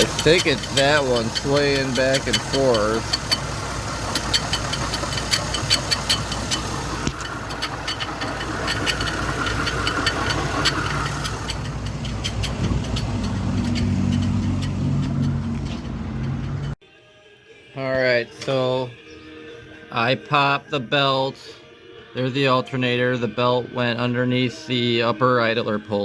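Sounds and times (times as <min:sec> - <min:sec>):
car engine idling: 0:00.0 - 0:16.8
rapid ticking scrape from pulley: 0:00.0 - 0:16.8.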